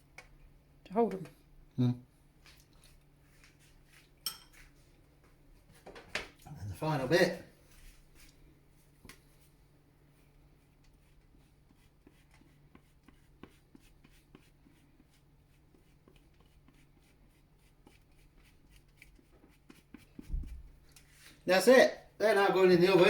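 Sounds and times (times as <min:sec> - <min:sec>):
spoon clicking and scraping: 0:04.2 - 0:04.7
low thump: 0:20.3 - 0:20.7.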